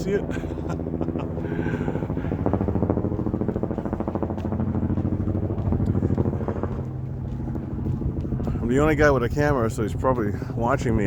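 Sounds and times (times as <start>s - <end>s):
helicopter engine drone: 0.0s - 11.0s
helicopter rotor chop: 0.0s - 11.0s.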